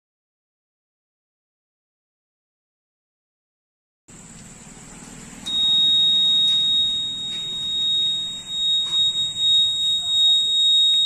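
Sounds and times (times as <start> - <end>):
high-pitched alarm buzzer: 5.5 - 11.0.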